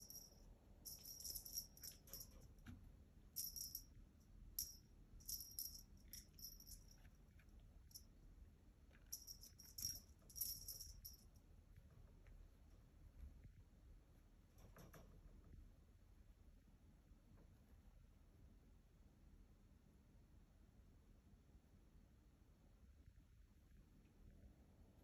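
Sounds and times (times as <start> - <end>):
rattle toy rattling: 0.0 - 2.5, 3.4 - 3.9, 4.6 - 7.0, 9.1 - 11.2.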